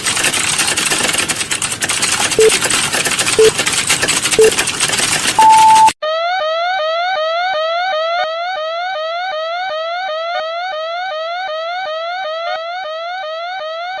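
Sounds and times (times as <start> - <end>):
electronic timer beep: 2.4 - 2.7, 5.4 - 6.0
timer alarm rising whoop: 5.4 - 14.0.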